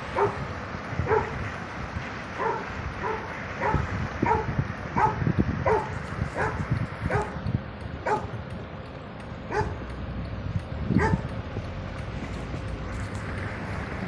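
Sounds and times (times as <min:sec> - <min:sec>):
dog barking: 0:00.1 - 0:00.4, 0:01.0 - 0:01.4, 0:02.4 - 0:07.4, 0:08.0 - 0:08.4, 0:09.5 - 0:09.8, 0:11.0 - 0:11.3.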